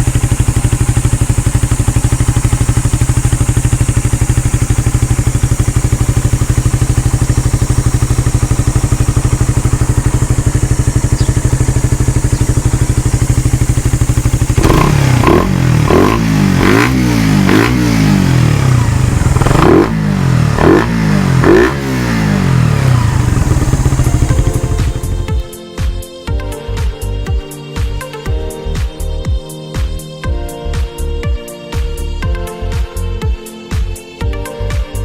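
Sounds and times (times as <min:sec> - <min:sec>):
motorcycle engine idling and revving: 0:00.0 - 0:26.0.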